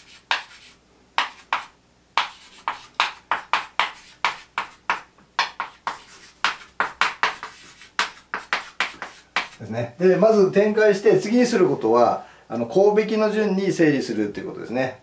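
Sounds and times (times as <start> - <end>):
pen taps and scrapes on paper: 0.3 - 0.6, 1.2 - 9.6.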